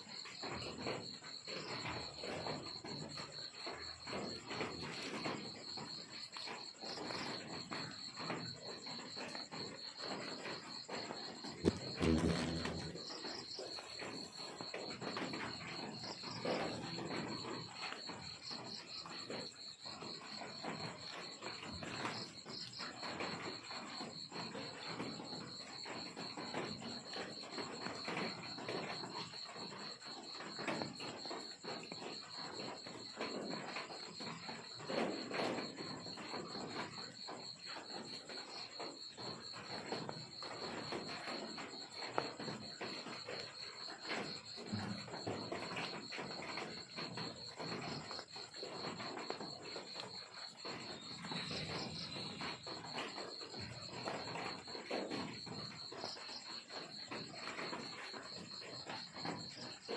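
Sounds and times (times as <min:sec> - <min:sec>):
crickets chirping: 0:00.0 - 0:59.9.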